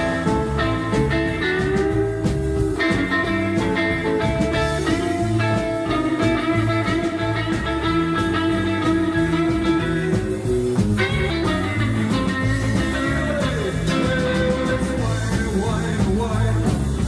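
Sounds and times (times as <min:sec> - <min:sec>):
live rock and roll band: 0:00.0 - 0:17.0.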